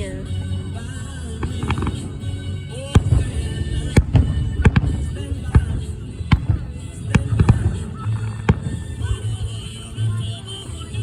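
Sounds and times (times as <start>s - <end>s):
fireworks bangs: 2.8s - 9.6s.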